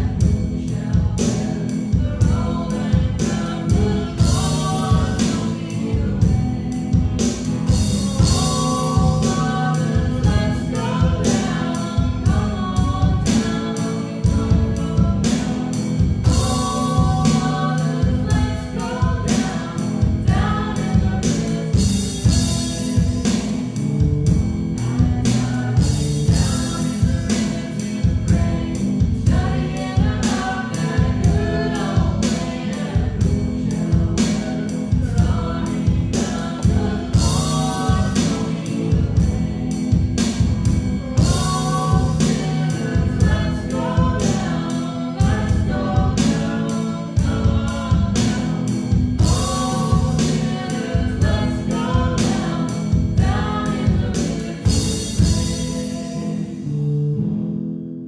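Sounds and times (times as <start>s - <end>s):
instrumental accompaniment with beat: 0.0s - 56.4s
voices singing together: 0.0s - 56.6s.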